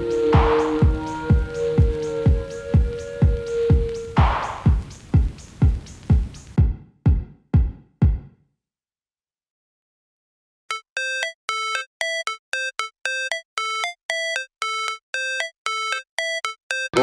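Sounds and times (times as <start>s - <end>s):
synthesizer riff of beeping notes: 0.0s - 4.8s, 10.7s - 17.0s.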